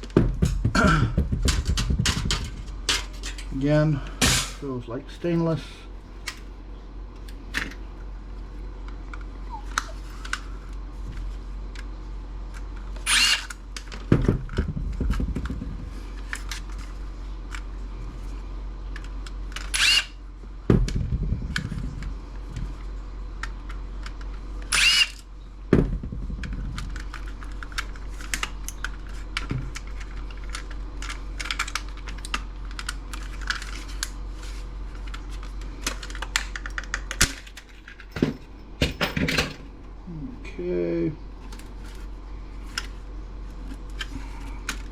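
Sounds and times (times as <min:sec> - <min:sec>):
parts clicking and knocking: 0:00.0 - 0:03.6, 0:13.1 - 0:16.9
power screwdriver whirring: 0:13.0 - 0:13.6, 0:19.7 - 0:20.1, 0:24.7 - 0:25.2
low rattle: 0:14.1 - 0:17.0, 0:25.7 - 0:28.3.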